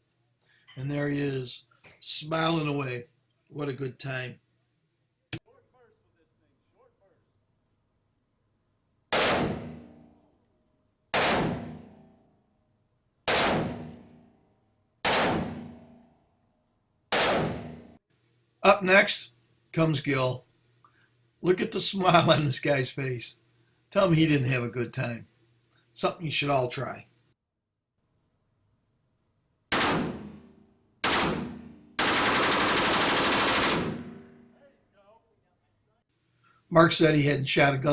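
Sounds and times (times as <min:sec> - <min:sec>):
machine gun firing: 0:09.1 - 0:09.9, 0:11.1 - 0:11.9, 0:13.3 - 0:13.9, 0:15.0 - 0:15.9, 0:17.1 - 0:17.8, 0:29.7 - 0:34.4.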